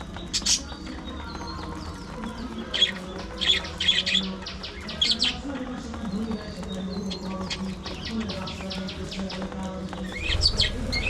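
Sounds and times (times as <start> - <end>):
budgerigars chirping: 0.0 - 5.7, 10.1 - 11.0.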